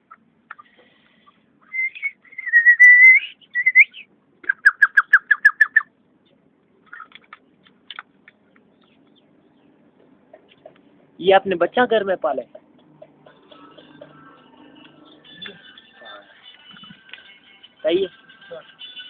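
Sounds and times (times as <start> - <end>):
partridge whistling and clucking: 1.6 - 5.9.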